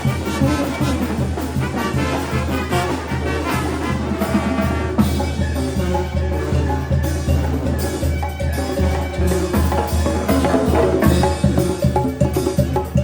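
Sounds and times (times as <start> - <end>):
trumpets and trombones melody: 0.0 - 13.0.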